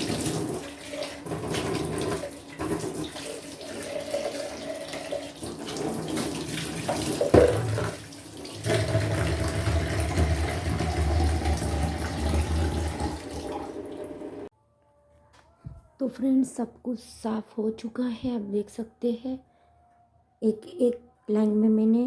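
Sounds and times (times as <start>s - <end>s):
tap running into sink: 5.7s - 8.0s
knock in sink: 6.8s - 8.0s.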